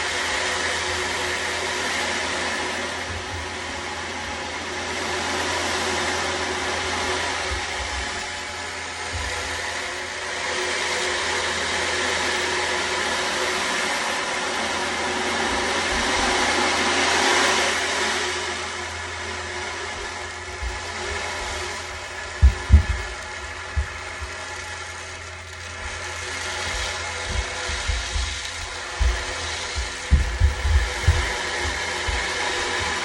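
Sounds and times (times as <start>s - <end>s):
ocean drum beads rolling: 20.2s - 33.0s
low thuds: 20.4s - 24.6s, 25.5s - 33.0s.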